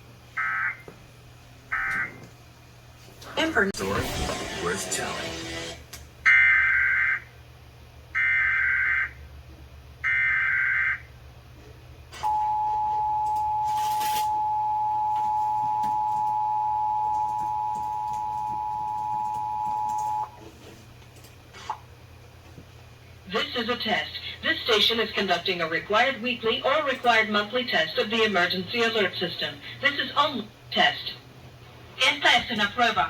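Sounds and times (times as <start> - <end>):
steady low hum: 0.0 - 6.3, 11.0 - 33.0
two-tone attention signal: 12.3 - 20.4.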